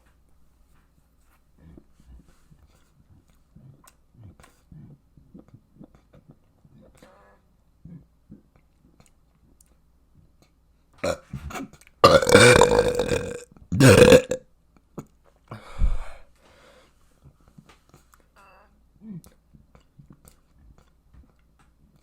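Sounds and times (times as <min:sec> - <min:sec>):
person burping loudly: 0:11.0 - 0:11.3, 0:12.0 - 0:14.4.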